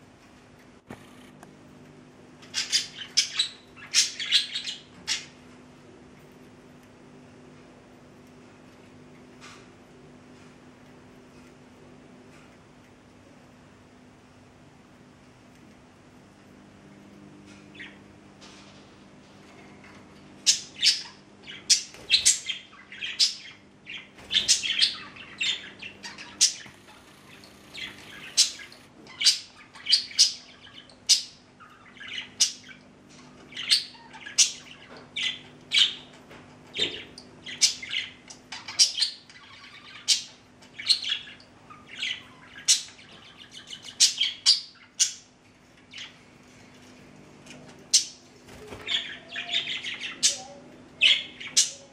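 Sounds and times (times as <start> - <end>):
budgerigars chirping and squawking: 2.4 - 5.4, 20.4 - 45.3, 47.9 - 51.9.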